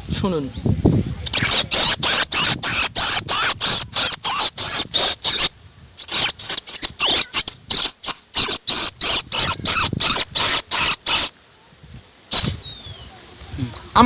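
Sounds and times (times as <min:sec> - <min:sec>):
man imitating bird chirps: 0:01.3 - 0:05.5, 0:08.4 - 0:11.3.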